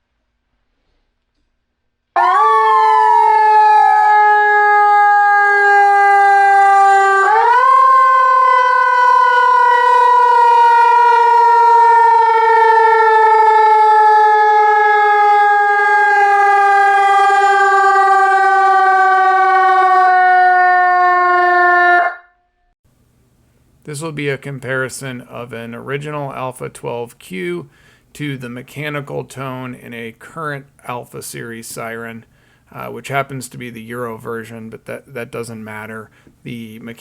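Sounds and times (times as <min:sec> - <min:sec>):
electronic siren rising and falling: 0:02.2 - 0:22.4.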